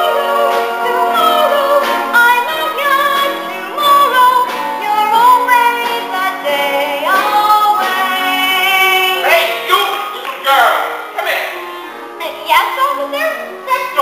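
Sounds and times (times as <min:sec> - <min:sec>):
woman singing a show tune: 0:00.0 - 0:09.3, 0:12.2 - 0:14.0
instrumental accompaniment: 0:00.0 - 0:14.0.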